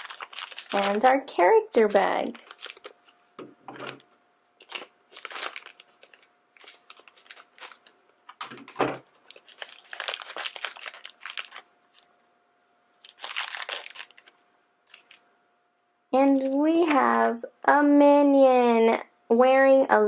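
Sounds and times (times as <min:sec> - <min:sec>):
plastic packet crinkling and tearing: 0:00.0 - 0:03.2, 0:03.8 - 0:12.2, 0:13.0 - 0:15.3.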